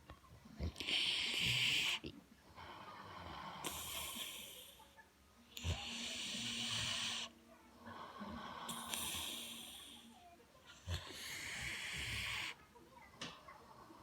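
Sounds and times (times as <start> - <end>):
wheezy snoring: 0.6 - 4.8, 5.6 - 12.6.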